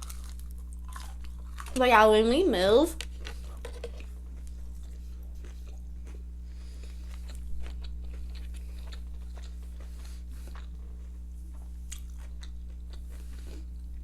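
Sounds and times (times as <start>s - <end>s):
chewing and crunching food: 0.0s - 14.0s
low electrical hum: 0.0s - 14.0s.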